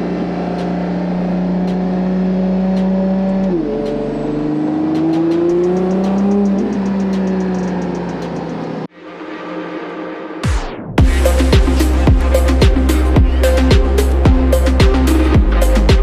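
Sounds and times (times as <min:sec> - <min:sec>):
sports car engine revving: 0:00.0 - 0:08.9.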